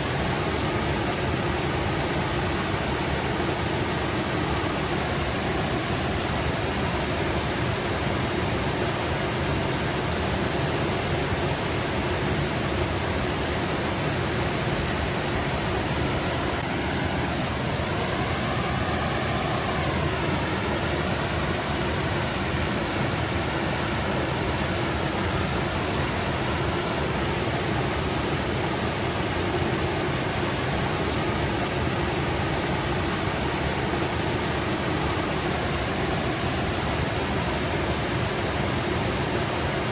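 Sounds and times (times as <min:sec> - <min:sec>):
brook babbling: 0:00.0 - 0:39.9
faint rising and falling tone: 0:16.3 - 0:22.6.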